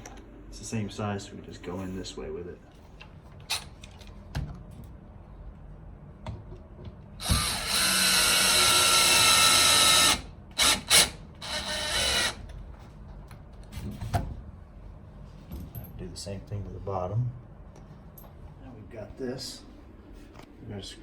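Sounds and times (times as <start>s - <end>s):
cordless drill driving screw: 7.2s - 12.4s.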